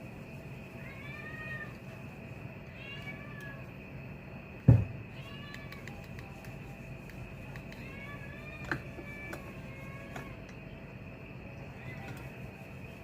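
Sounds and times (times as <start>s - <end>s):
cat meowing: 0.8s - 1.8s
loud thump: 4.6s - 5.0s.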